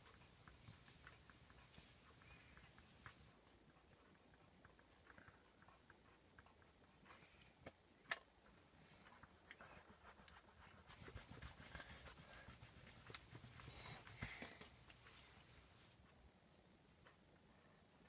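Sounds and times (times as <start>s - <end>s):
pen scratching on paper: 0.0s - 7.2s, 9.0s - 14.2s.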